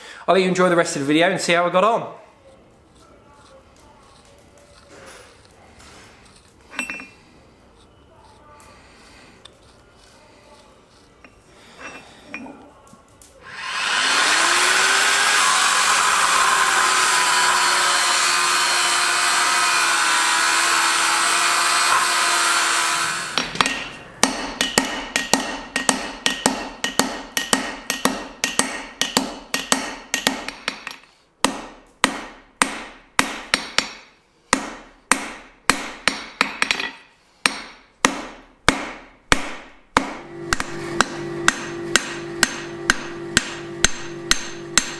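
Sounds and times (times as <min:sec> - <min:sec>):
hammer ringing on hot steel: 0:38.7 - 0:44.9.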